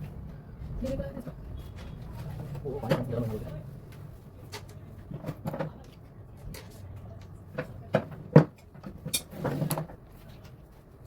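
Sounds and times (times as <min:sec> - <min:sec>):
objects knocking and clunking: 0:07.5 - 0:10.5.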